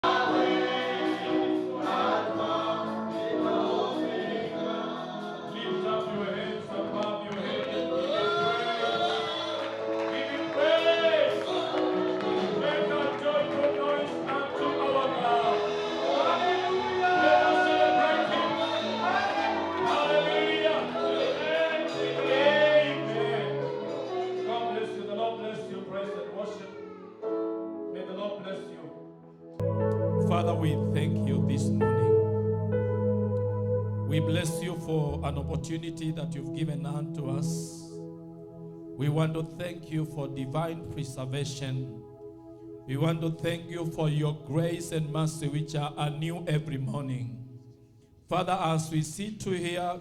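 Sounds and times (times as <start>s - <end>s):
gospel choir singing: 0.0s - 26.6s, 29.6s - 42.2s
held low notes: 29.6s - 40.4s.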